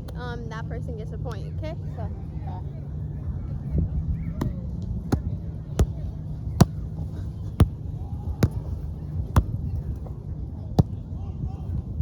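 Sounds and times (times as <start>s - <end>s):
wind: 0.0s - 12.0s
paddles hitting ball: 4.4s - 11.2s.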